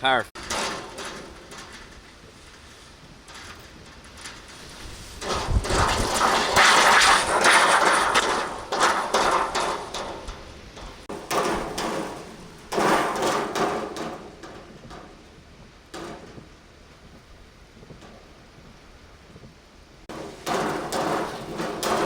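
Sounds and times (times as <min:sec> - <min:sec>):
knocks and rattles: 0:00.4 - 0:22.0
strong wind gusts: 0:01.5 - 0:13.2.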